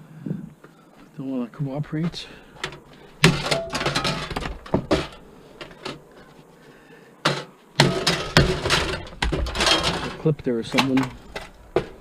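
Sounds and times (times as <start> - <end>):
metal clanking and knocking: 2.6 - 6.0, 7.3 - 12.0.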